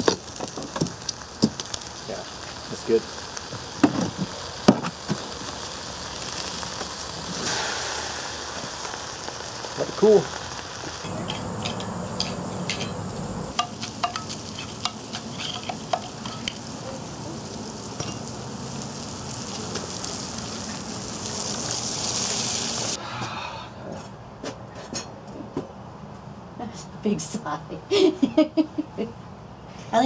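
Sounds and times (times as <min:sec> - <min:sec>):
hot metal sizzling hiss: 0:00.0 - 0:23.0
sharp pops: 0:03.4 - 0:05.5.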